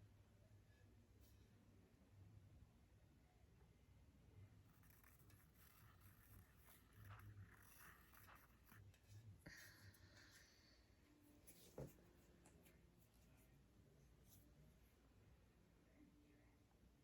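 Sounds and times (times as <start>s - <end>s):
low steady hum: 0.0s - 17.0s
faint scratching and rustling: 4.6s - 10.7s, 11.3s - 15.0s.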